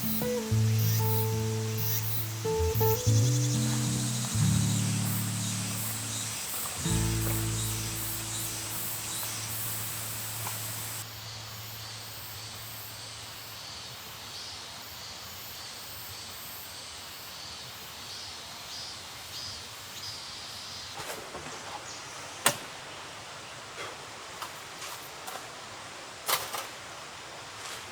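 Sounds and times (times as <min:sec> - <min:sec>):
faint high chirp: 0:00.0 - 0:11.0
outdoor background hiss: 0:00.0 - 0:27.9.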